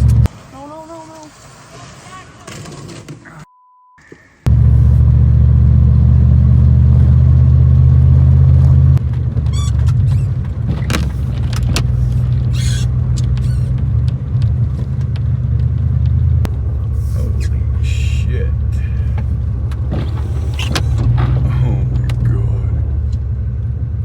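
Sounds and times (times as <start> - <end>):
pickup engine droning: 0.0 - 0.4, 4.5 - 24.0
short squeaks: 9.4 - 14.0, 19.1 - 21.7.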